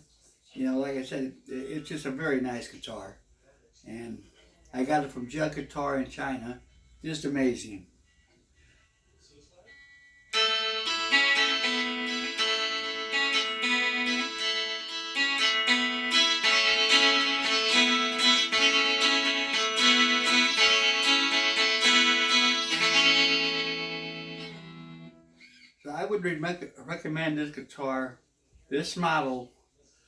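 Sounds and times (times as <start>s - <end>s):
electric guitar picking melody: 10.3s - 25.6s.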